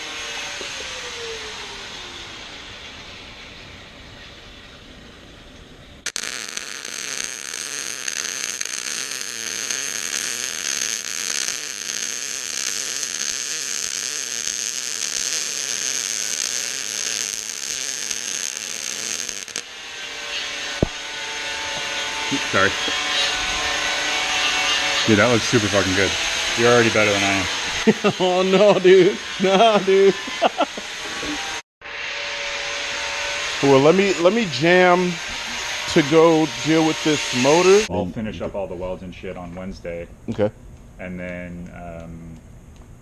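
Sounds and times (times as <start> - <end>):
welding arc crackling: 6.0 - 31.6, 33.6 - 37.9.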